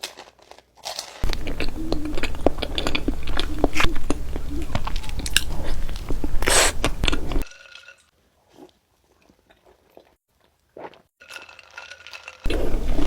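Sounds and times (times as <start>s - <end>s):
person chewing crunchy dessert: 0.0s - 7.5s, 12.5s - 13.0s.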